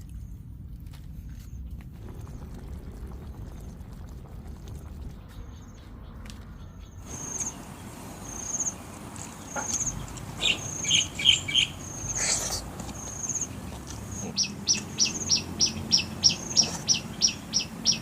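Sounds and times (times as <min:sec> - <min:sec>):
bird chirping: 0:04.9 - 0:18.0
high insect trill: 0:07.1 - 0:17.7.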